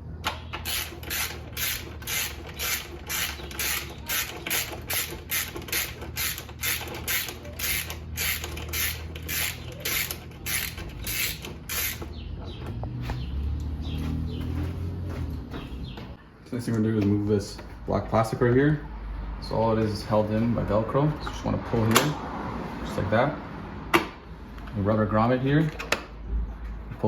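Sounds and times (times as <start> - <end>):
ratchet wrench clicking: 0.6 - 12.1.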